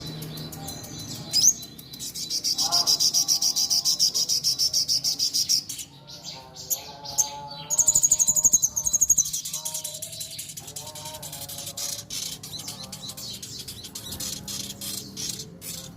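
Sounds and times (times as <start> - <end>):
songbird singing: 0.0 - 15.9.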